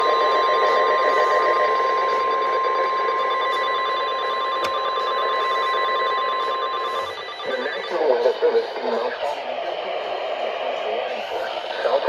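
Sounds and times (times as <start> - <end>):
steady high-pitched alarm beep: 0.0 - 12.0
radio reception hiss: 6.9 - 12.0.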